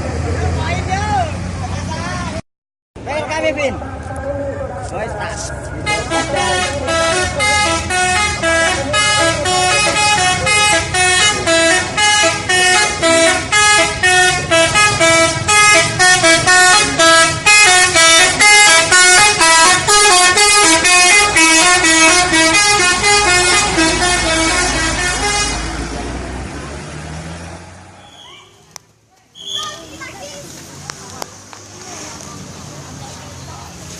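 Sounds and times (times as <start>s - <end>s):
multi-tone bus horn tune: 5.7s - 26.0s.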